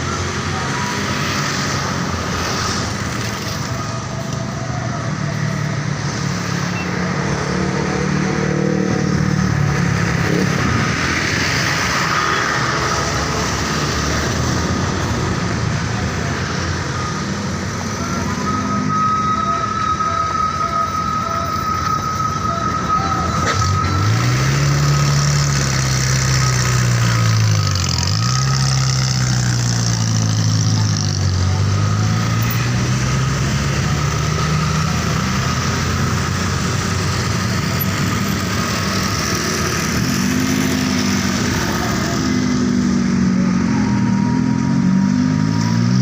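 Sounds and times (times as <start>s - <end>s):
bus diesel engine running: 8.8s - 46.0s.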